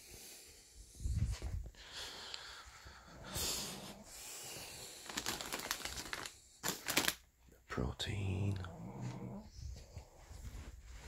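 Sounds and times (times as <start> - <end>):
crinkling rustle: 4.6 - 7.3.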